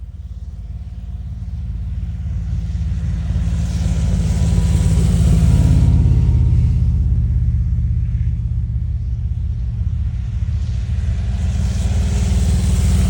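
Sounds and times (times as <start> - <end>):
low pulsing engine rumble: 0.0 - 13.0.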